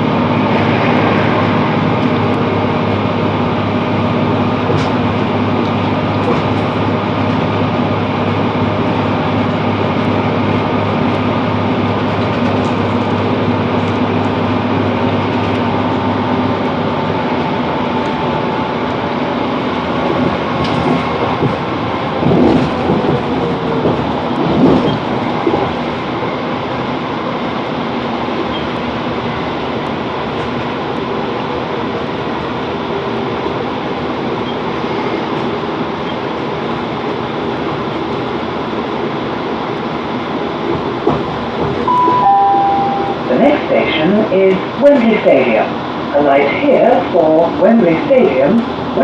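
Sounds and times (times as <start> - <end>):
train engine and wheels drone: 0.0 - 49.0
wheels clattering over track: 19.9 - 26.2.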